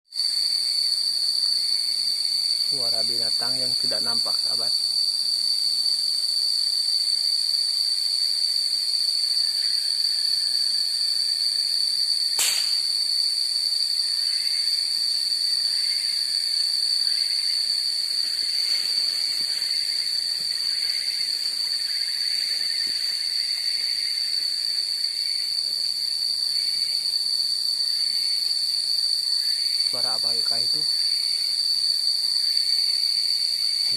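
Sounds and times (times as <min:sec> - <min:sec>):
insect drone: 0:00.0 - 0:33.9
hiss: 0:06.1 - 0:28.7
sharp click: 0:12.4 - 0:13.0.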